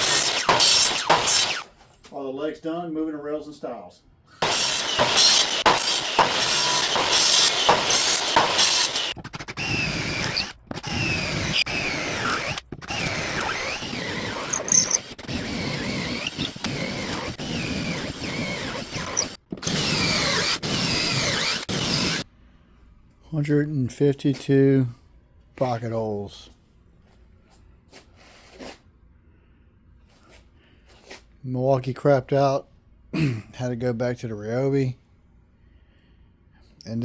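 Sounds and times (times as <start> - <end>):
cordless drill motor whine: 0.0 - 1.7, 4.4 - 22.2.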